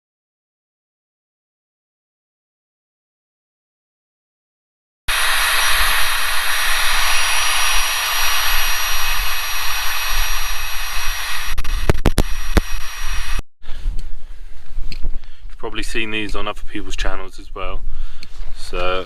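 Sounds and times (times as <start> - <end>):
air pump whirring: 5.1 - 13.4
sharp clicks: 11.3 - 13.4.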